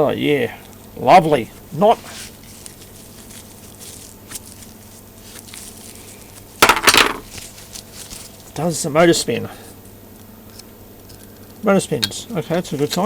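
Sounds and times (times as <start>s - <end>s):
clatter of parts set down: 6.6s - 7.4s
handling metal parts on workbench: 6.6s - 8.7s.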